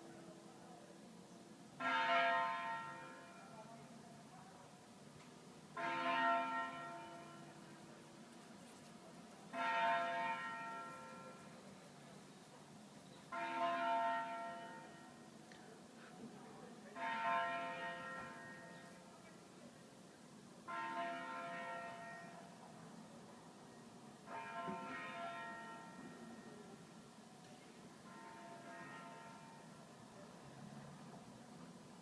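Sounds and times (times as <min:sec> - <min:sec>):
church bell tolling: 0:01.8 - 0:03.6, 0:05.8 - 0:07.8, 0:09.5 - 0:11.6, 0:13.3 - 0:15.2, 0:16.9 - 0:19.1, 0:20.7 - 0:22.5, 0:24.2 - 0:27.0, 0:28.0 - 0:29.9.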